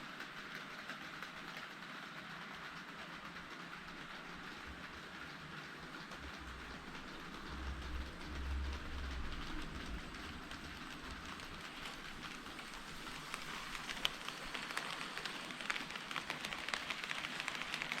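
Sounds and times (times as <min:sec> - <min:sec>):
wheels clicking on rails: 0:00.0 - 0:18.0
low motor hum: 0:04.1 - 0:13.1.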